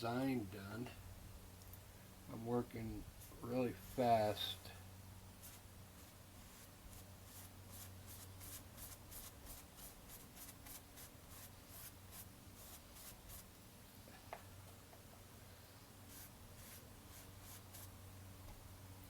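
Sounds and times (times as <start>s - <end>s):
paintbrush scrubbing canvas: 5.4s - 13.5s, 16.1s - 18.0s.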